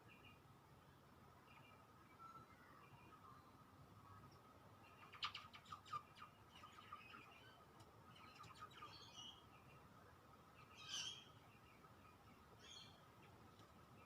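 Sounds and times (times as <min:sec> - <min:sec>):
faint steady high tone: 0:02.0 - 0:03.9
bird chirps: 0:10.6 - 0:13.0.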